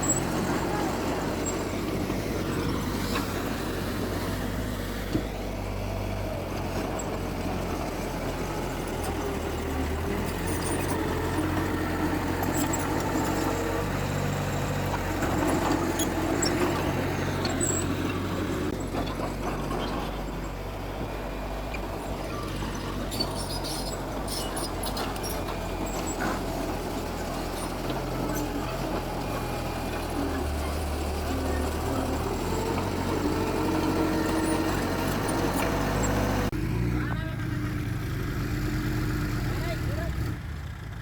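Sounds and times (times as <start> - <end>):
heavy machinery engines running: 0.0 - 41.0.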